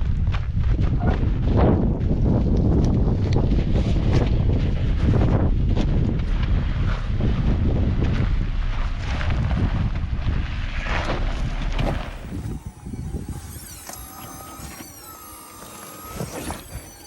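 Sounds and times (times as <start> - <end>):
wind buffeting microphone: 0.0 - 15.4
low rumble: 0.0 - 16.6
high whine of shifting pitch: 0.7 - 17.0
vehicle driving over trail: 4.0 - 16.8.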